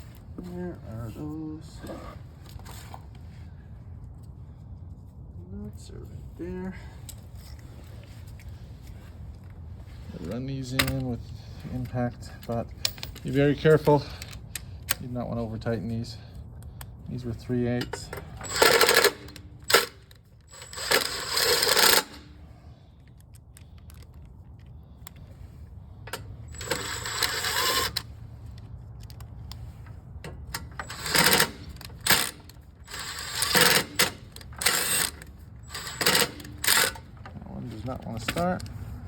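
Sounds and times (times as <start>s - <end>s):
sharp metal clicks: 17.8s - 22.4s, 30.3s - 37.4s
impact gun running nuts: 18.2s - 22.4s, 26.5s - 28.0s, 30.6s - 37.2s.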